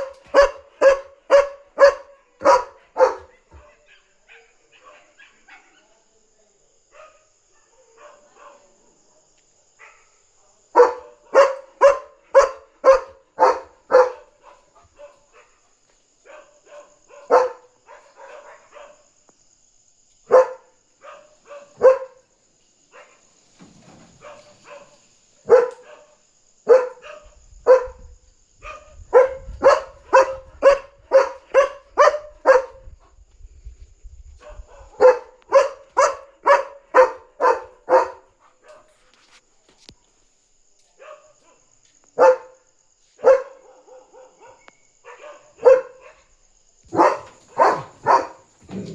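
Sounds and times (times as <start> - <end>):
dog barking loudly: 0.0 - 5.4, 10.8 - 15.5, 16.3 - 19.0, 20.3 - 22.2, 24.2 - 26.1, 26.7 - 28.0, 28.6 - 32.9, 34.7 - 38.8, 42.2 - 42.6, 43.2 - 46.2, 46.9 - 48.9.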